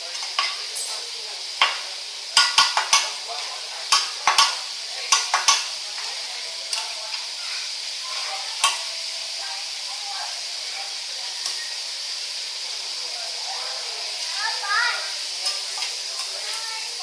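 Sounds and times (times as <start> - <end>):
metal utensils clacking on griddle: 0.0 - 7.3, 8.0 - 9.0, 11.4 - 11.8, 14.2 - 17.0
food sizzling on a griddle: 0.0 - 17.0.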